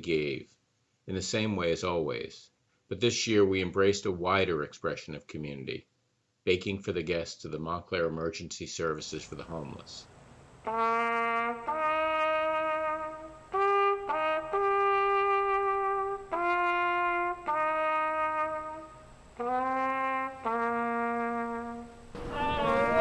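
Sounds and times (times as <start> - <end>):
brass instrument playing slow melody: 10.6 - 23.0.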